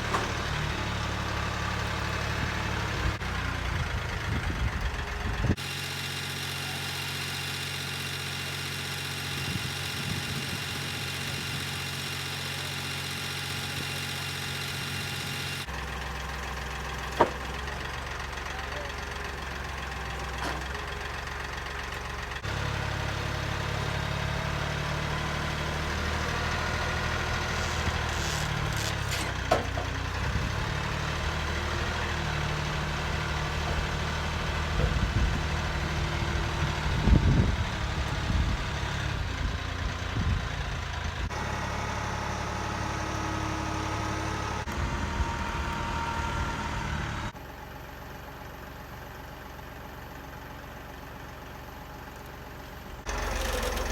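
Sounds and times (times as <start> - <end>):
tractor engine idling: 0.0 - 53.9.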